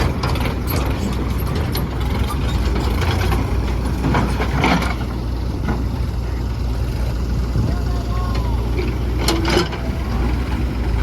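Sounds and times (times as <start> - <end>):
metallic clanks and knocks: 0.0 - 5.9, 9.2 - 9.8
diesel engine running: 0.0 - 11.0.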